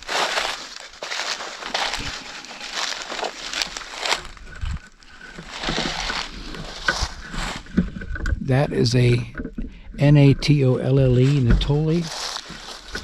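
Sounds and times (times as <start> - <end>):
footsteps crunching through dry leaves: 0.0 - 7.7, 11.2 - 13.0.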